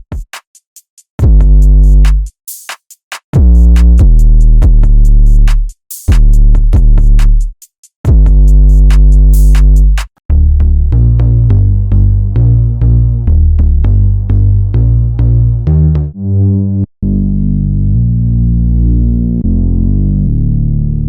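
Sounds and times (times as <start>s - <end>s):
hi-hat ticks: 0.0s - 10.1s
drum machine beat: 0.0s - 10.2s
deep synth bass notes: 1.2s - 2.2s, 3.4s - 7.5s, 8.1s - 21.0s.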